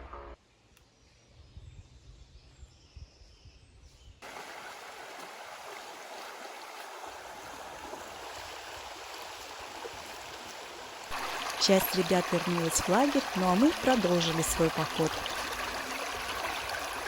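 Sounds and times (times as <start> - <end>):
stream rushing over stones: 4.2 - 17.0.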